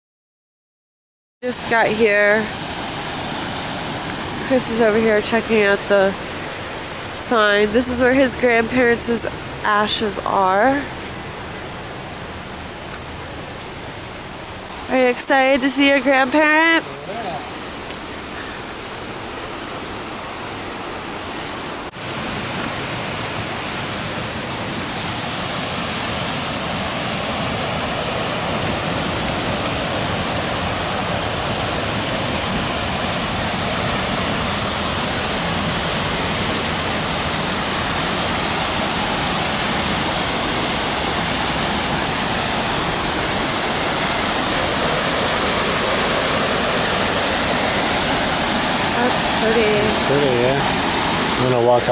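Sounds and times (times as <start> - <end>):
waterfall and rapids rushing: 1.4 - 51.9.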